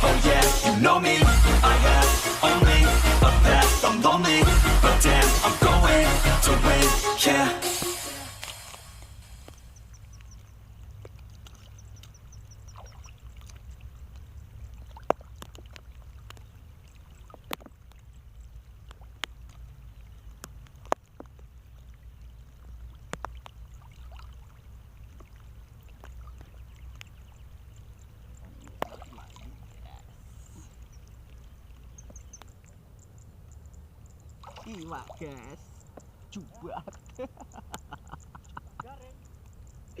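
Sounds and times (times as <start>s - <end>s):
steady low rumble: 0.0s - 7.1s, 35.1s - 40.0s
water splashing and sloshing: 7.0s - 40.0s.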